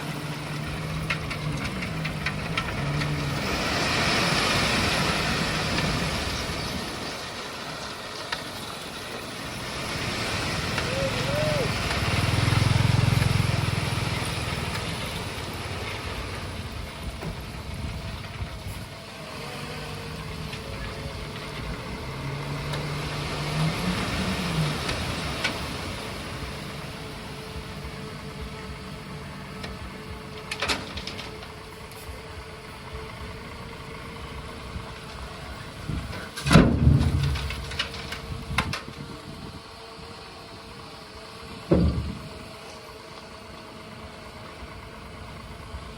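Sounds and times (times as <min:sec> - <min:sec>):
truck engine running: 0:00.0 - 0:45.9
loud bangs: 0:36.4 - 0:38.3.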